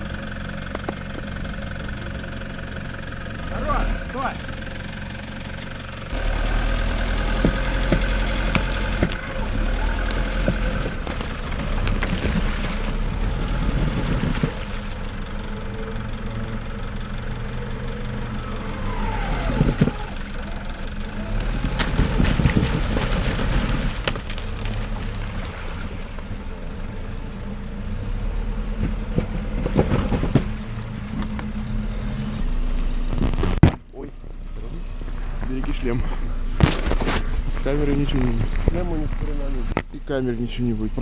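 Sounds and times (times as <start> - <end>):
off-road vehicle engine running: 0.0 - 41.0
sharp knocks and clunks: 7.3 - 9.2, 28.8 - 30.6.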